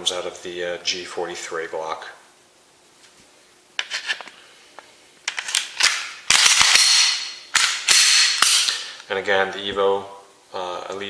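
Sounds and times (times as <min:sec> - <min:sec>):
pistol slide sliding and seating: 0:05.3 - 0:08.8
pistol metal clicks: 0:05.3 - 0:09.1.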